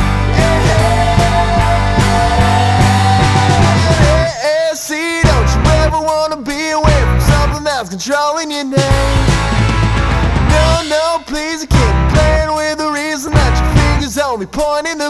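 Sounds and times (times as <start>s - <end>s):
bass guitar: 0.0s - 4.4s, 5.2s - 7.8s, 8.8s - 14.6s
electric guitar: 0.0s - 4.4s, 5.2s - 6.2s, 6.9s - 7.8s, 8.8s - 14.2s
drums: 0.0s - 15.0s
man singing rock song: 0.0s - 15.0s.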